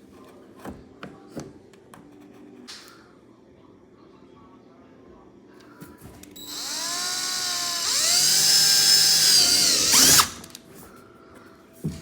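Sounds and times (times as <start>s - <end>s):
rotary power tool whine: 6.4s - 10.6s.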